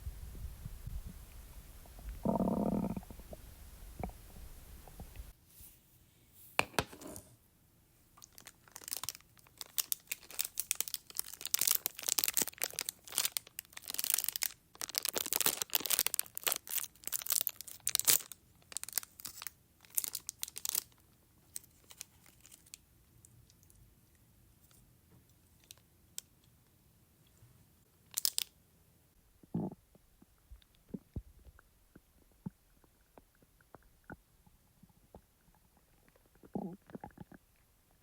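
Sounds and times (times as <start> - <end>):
stomach rumble: 0.0 - 5.4, 29.4 - 38.0
plastic packet crinkling: 8.2 - 22.8, 28.1 - 28.5.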